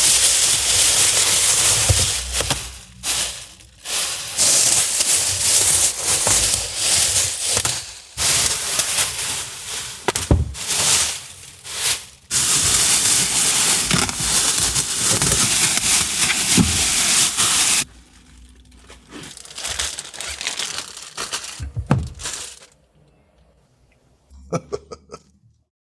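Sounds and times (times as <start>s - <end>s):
plastic wrap tearing: 0.0s - 22.8s
plastic crinkling: 0.0s - 23.1s.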